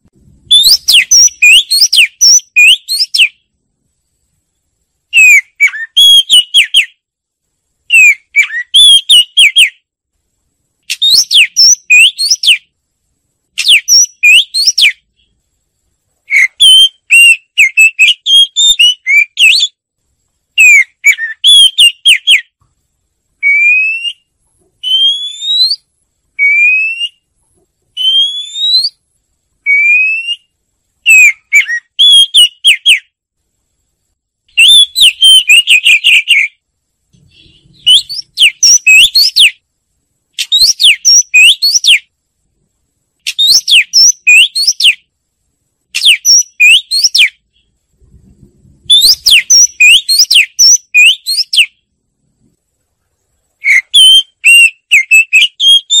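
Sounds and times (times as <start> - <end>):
bird singing whistled phrases: 0.5 - 3.4, 5.1 - 7.0, 7.9 - 9.8, 10.9 - 12.7, 13.6 - 15.3, 16.3 - 19.8, 20.6 - 22.6, 23.4 - 27.3, 28.0 - 29.0, 29.6 - 33.1, 34.5 - 36.6, 37.2 - 39.6, 40.4 - 42.1, 43.3 - 45.1, 46.0 - 47.7, 48.9 - 51.8, 53.6 - 56.0.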